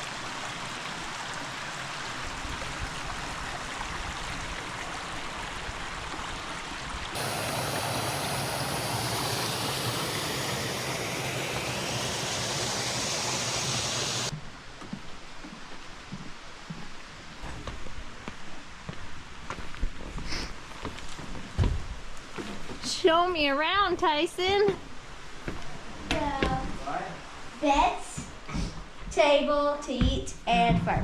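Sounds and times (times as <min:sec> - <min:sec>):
stream water rushing: 0:00.0 - 0:14.3.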